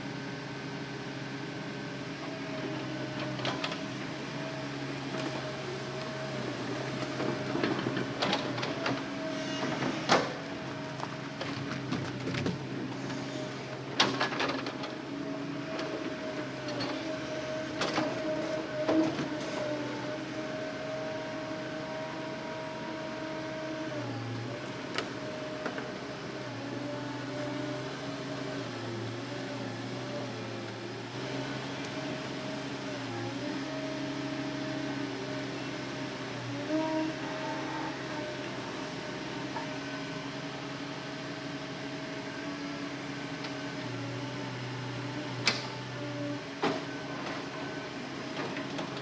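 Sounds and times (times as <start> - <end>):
excavator engine and hydraulics: 0.0 - 49.0
hydraulic whine: 8.2 - 10.5.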